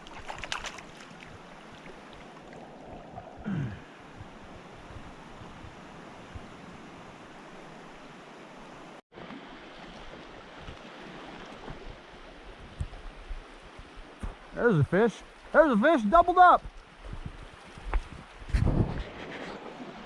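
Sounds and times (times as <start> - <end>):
stream flowing over rocks: 0.0 - 16.0.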